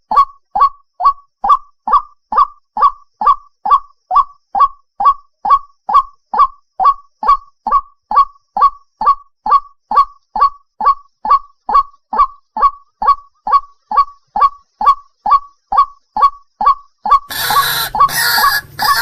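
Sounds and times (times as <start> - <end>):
waterhen calling: 17.1 - 19.0.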